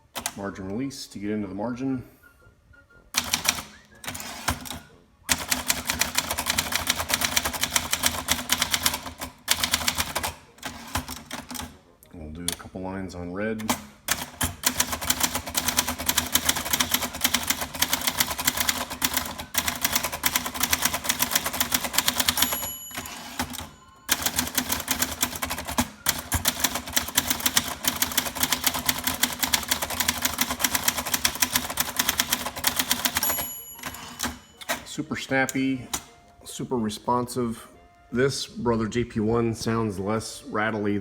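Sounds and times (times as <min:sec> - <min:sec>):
typewriter key strikes: 0:13.6 - 0:34.9
typewriter bell ringing: 0:16.4 - 0:35.0.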